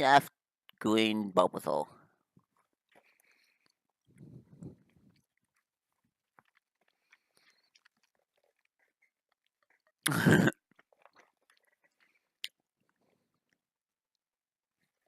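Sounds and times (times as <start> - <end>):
sticky chewing mouth clicks: 2.4 - 10.1, 10.7 - 13.6.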